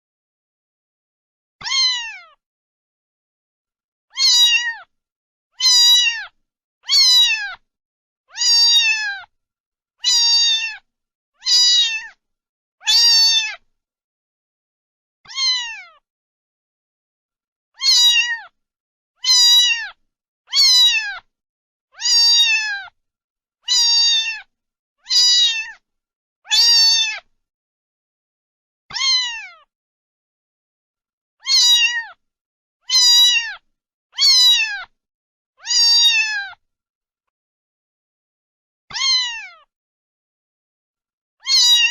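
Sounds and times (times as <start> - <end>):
cat meowing: 1.6 - 2.4, 4.1 - 4.9, 5.6 - 7.6, 8.3 - 9.3, 10.0 - 12.2, 12.8 - 13.6, 15.3 - 16.0, 17.8 - 18.6, 19.2 - 21.3, 22.0 - 23.0, 23.6 - 25.8, 26.5 - 27.3, 28.9 - 29.7, 31.4 - 32.2, 32.8 - 33.6, 34.2 - 34.9, 35.6 - 36.6, 38.9 - 39.7, 41.4 - 41.9.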